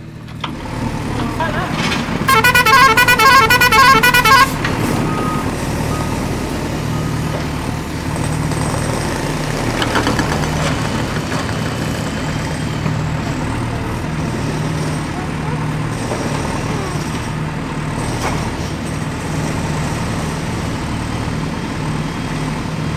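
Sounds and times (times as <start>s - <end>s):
toy horn warbling tune: 2.3s - 4.6s.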